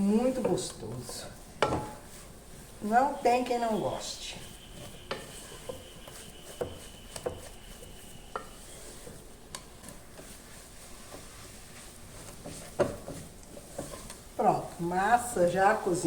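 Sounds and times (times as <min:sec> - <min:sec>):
thick dough stirred and scraped in pan: 0:00.0 - 0:16.0
utensil knocking against pan: 0:01.6 - 0:02.0.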